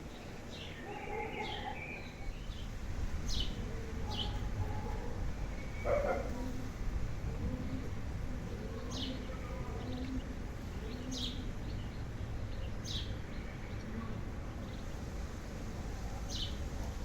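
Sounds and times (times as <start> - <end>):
bird chirping: 10.8 - 15.0.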